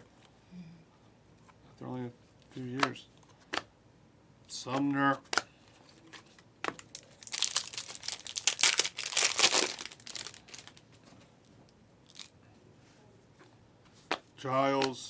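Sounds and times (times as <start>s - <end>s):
plastic wrapper crinkling: 6.0s - 10.9s, 12.0s - 12.4s.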